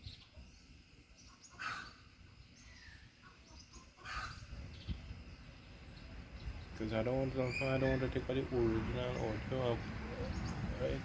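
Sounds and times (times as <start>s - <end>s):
birds chirping: 0.0s - 11.0s
wind rumble on microphone: 4.1s - 5.4s, 8.8s - 11.0s.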